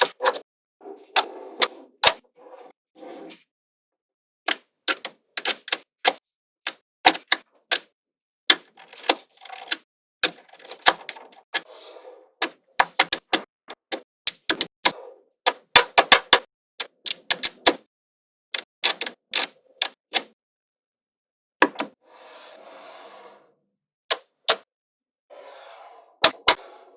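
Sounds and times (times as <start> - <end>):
soft scraping: 22.0 - 23.6, 25.3 - 26.9.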